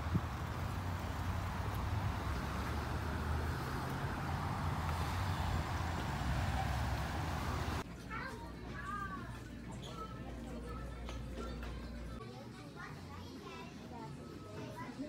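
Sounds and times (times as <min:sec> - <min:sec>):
car engine rumble: 0:00.0 - 0:07.8.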